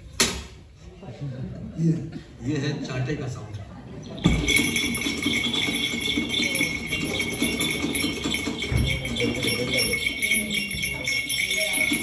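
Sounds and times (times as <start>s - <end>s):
jingling and rattling: 4.0s - 12.0s.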